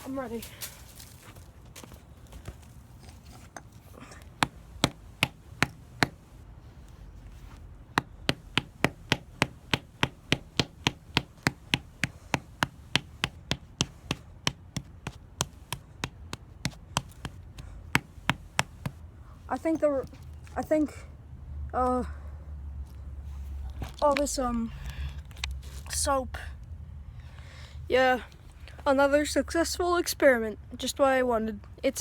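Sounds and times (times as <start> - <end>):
hammer smashing soap: 4.4 - 6.4, 8.0 - 19.0.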